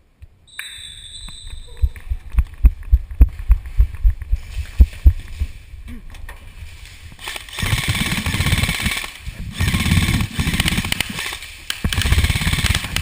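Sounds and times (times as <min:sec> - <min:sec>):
airsoft rifle firing bursts: 0:07.2 - 0:13.0.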